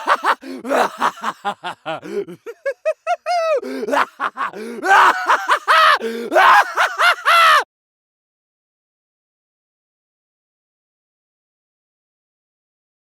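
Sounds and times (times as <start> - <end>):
theatrical evil laughter: 0.0 - 7.6.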